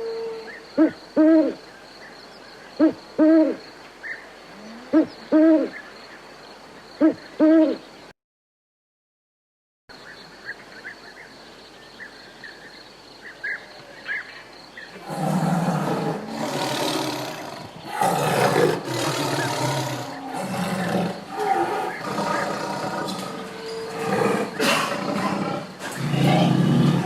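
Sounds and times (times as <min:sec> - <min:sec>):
big cat roaring: 0:15.0 - 0:27.0.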